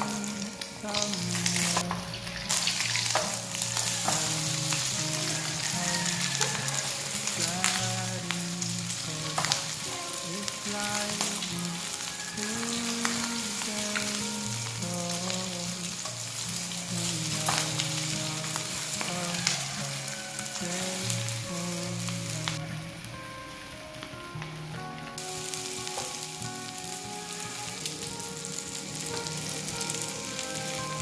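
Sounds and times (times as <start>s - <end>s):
food sizzling in hot oil: 0.0s - 31.0s
soft instrumental melody: 0.0s - 31.0s
sharp clicks of frying oil: 0.9s - 10.0s, 15.2s - 20.0s, 25.2s - 27.0s.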